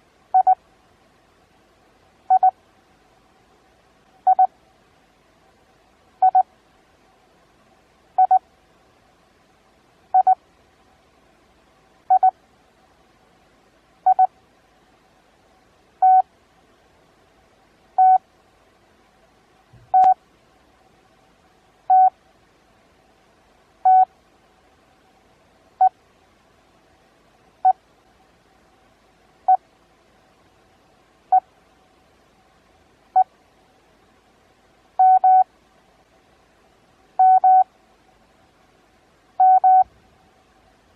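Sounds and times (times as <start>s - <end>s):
morse code beeps: 0.4s - 0.6s, 2.3s - 2.5s, 4.3s - 4.5s, 6.2s - 6.4s, 8.2s - 8.4s, 10.2s - 10.4s, 12.1s - 12.3s, 14.1s - 14.3s, 16.0s - 16.2s, 18.0s - 18.2s, 20.0s - 20.2s, 21.9s - 22.1s, 23.9s - 24.1s, 35.0s - 35.4s, 37.2s - 37.6s, 39.4s - 39.9s.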